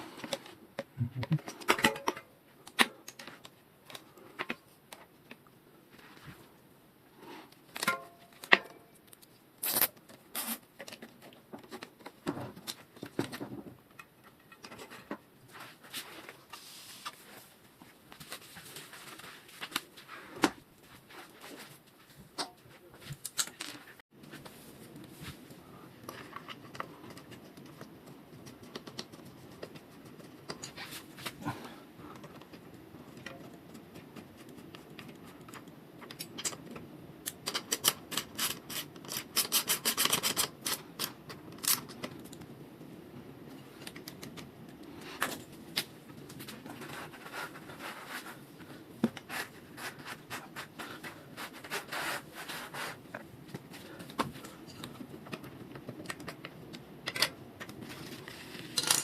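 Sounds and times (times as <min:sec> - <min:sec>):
rubbing and scraping: 0:46.3 - 0:54.7.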